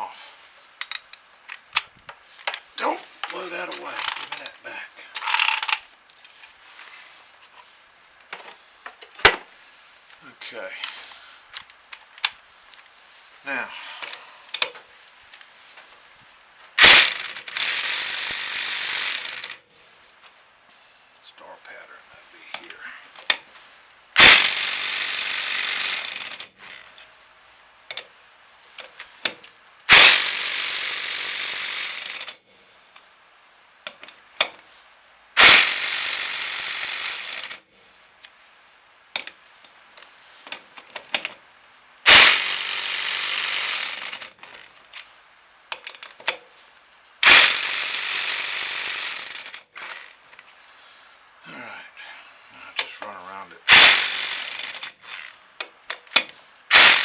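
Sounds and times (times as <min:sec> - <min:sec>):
impact wrench hammering: 0:16.8 - 0:19.6, 0:24.2 - 0:26.4, 0:29.9 - 0:31.3, 0:35.4 - 0:37.5, 0:42.1 - 0:44.2, 0:47.2 - 0:49.2, 0:53.7 - 0:54.9, 0:56.7 - 0:57.0.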